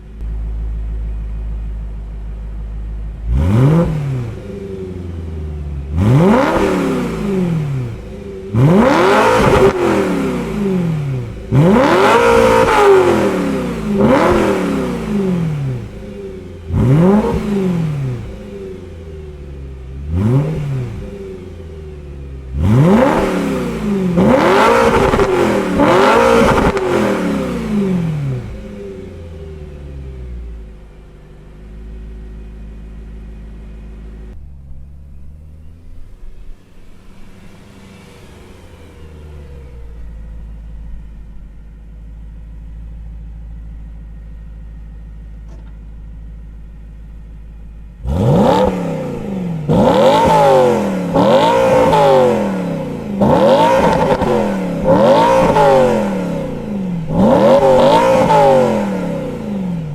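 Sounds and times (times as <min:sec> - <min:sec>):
car engine idling: 0:00.0 - 0:59.9
car engine revving: 0:00.0 - 0:59.9
car accelerating hard: 0:03.2 - 0:30.7, 0:48.0 - 0:59.9.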